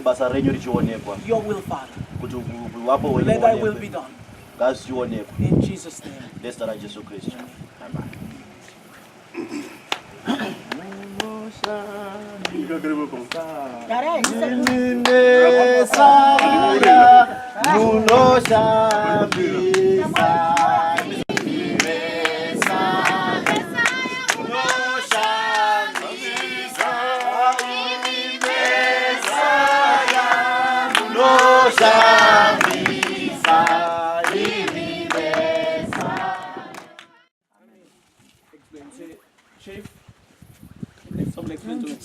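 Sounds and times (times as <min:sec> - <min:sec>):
hand claps: 0:09.9 - 0:10.1, 0:10.7 - 0:11.8, 0:12.4 - 0:12.6, 0:13.3 - 0:13.5, 0:14.2 - 0:15.2, 0:15.9 - 0:17.0, 0:17.6 - 0:37.1
group of voices singing: 0:10.6 - 0:37.3.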